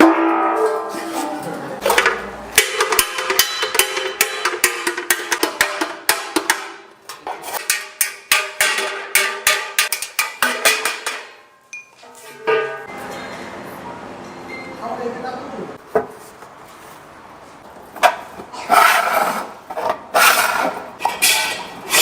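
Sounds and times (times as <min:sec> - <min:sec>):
hammer striking metal gong: 0:00.0 - 0:01.1, 0:11.8 - 0:12.9.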